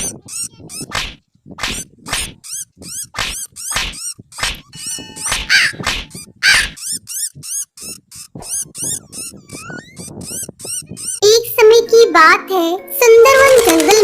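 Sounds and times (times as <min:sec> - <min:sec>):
high-pitched animal cries: 0:00.0 - 0:00.9, 0:02.2 - 0:11.3.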